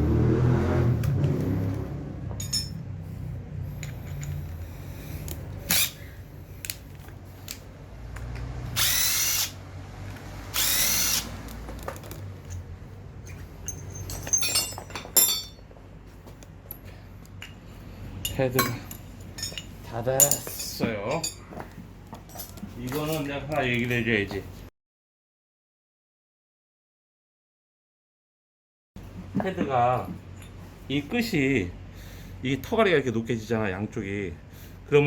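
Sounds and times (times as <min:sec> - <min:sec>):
metal clicks and clinks: 0:02.4 - 0:02.8, 0:03.8 - 0:04.6, 0:11.8 - 0:15.6
power drill whining: 0:05.6 - 0:06.0, 0:08.7 - 0:09.6, 0:10.5 - 0:11.5.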